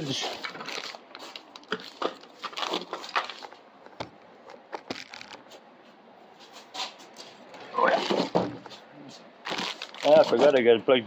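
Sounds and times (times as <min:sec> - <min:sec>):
packaging crinkling: 0:00.2 - 0:03.6, 0:04.5 - 0:05.5, 0:09.4 - 0:10.4.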